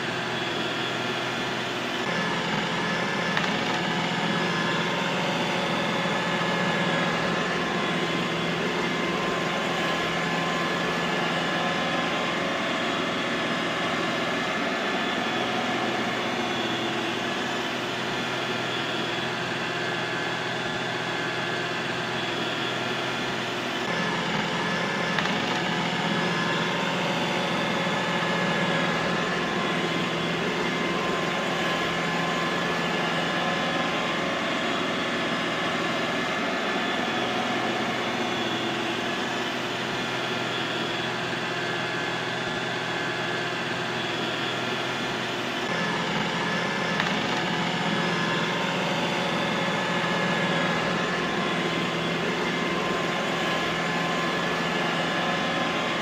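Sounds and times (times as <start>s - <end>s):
robot vacuum motor whirring: 23.9s - 56.0s.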